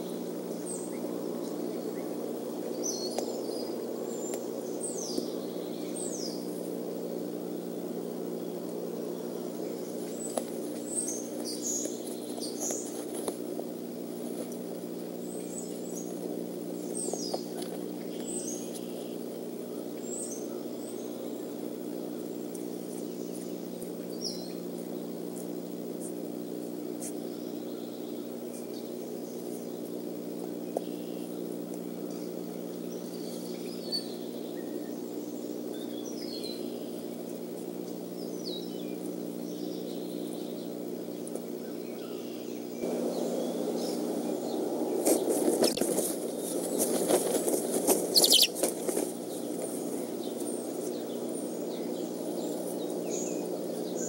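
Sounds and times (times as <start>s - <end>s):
steady low hum: 0.0s - 54.0s
high bird chirps: 48.1s - 48.6s.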